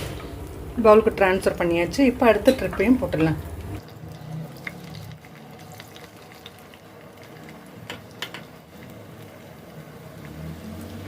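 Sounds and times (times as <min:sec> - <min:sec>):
chicken sizzling in hot oil: 0:03.4 - 0:11.0.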